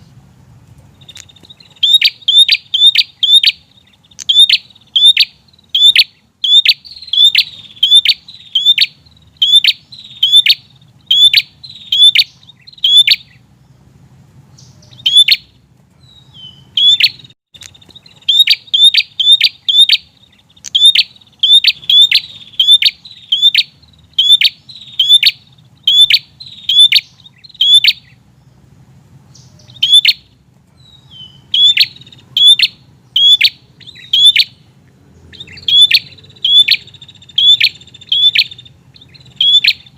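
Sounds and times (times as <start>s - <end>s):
bird chirping sharply: 0.9s - 28.6s, 29.3s - 39.9s.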